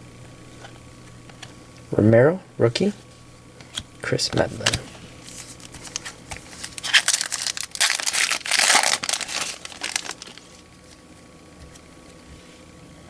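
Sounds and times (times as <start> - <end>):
wrapper crinkling and tearing: 4.6 - 11.0.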